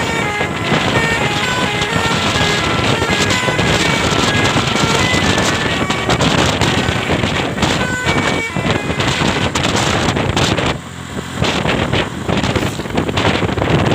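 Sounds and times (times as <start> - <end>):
road vehicle noise: 0.0 - 13.9
wind buffeting microphone: 0.0 - 13.9.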